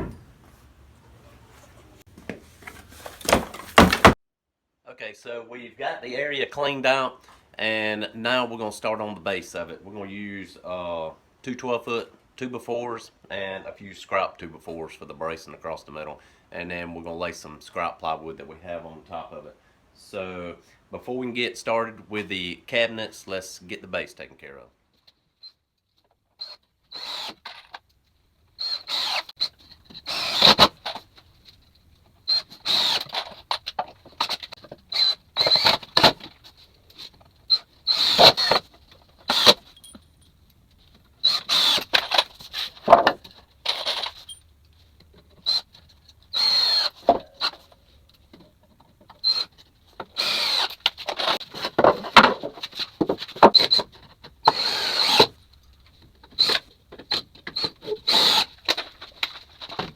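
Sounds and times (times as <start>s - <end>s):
power tools on lumber: 2.6s - 4.2s, 26.4s - 27.6s, 28.6s - 31.0s, 32.3s - 33.6s, 34.2s - 36.3s, 37.5s - 39.8s, 41.2s - 44.3s, 46.3s - 47.7s, 50.0s - 53.8s, 54.4s - 55.4s, 56.4s - 59.2s.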